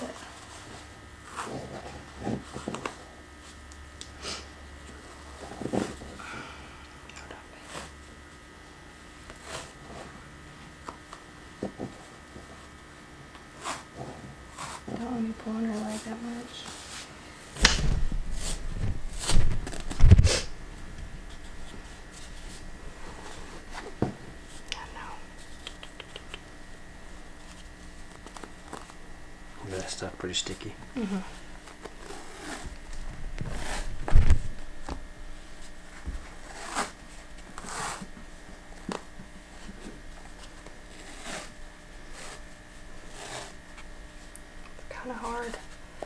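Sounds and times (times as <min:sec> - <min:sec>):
hands rustling with tape: 0:13.4 - 0:46.0
heavy bump: 0:17.5 - 0:23.2.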